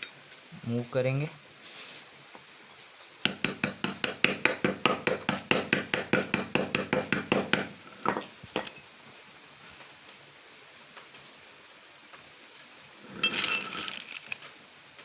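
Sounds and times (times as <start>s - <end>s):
hammer blows on metal: 3.3s - 8.2s.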